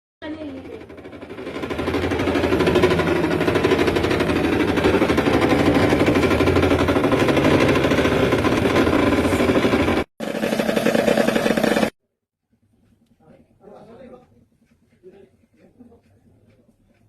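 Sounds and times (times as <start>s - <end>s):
pump buzzing and rattling: 0.3s - 12.0s.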